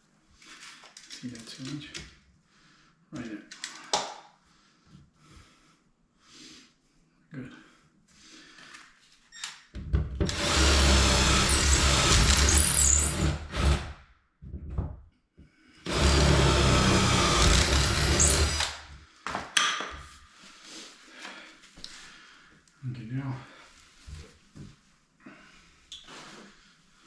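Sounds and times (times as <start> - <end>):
power drill boring holes: 10.3 - 14.0, 15.8 - 19.0.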